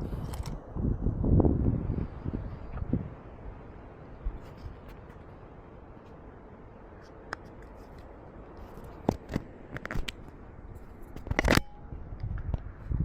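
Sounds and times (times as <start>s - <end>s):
faint steady background noise: 0.0s - 13.0s
camera gear clicks and knocks: 0.2s - 0.6s, 8.7s - 10.3s, 11.1s - 12.6s.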